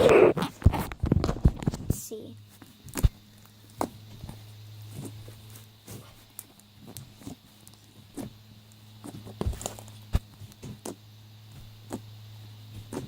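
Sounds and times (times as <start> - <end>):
crunchy slime popping and clicking: 2.7 - 4.3.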